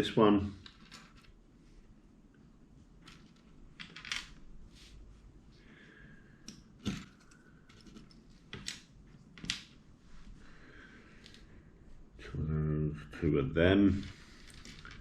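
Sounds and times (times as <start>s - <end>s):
plastic pieces clicking: 14.4s - 15.0s.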